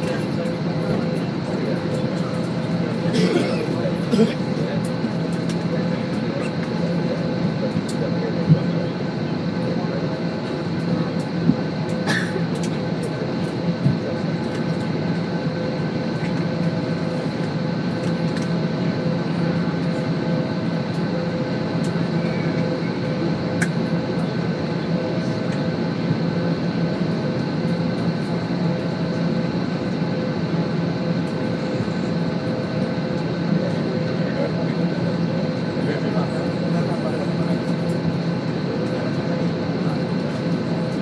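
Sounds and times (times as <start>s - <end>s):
airliner cabin drone: 0.0s - 41.0s.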